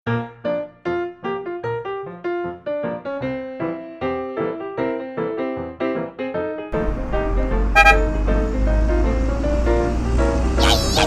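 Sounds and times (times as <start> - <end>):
keyboard single notes: 6.8 - 9.3.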